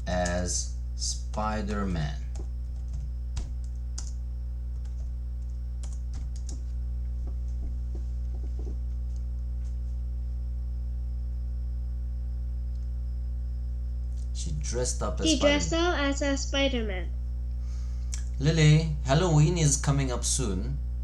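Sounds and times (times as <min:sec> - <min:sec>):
electrical hum: 0:00.0 - 0:21.0
keyboard typing: 0:02.3 - 0:06.6.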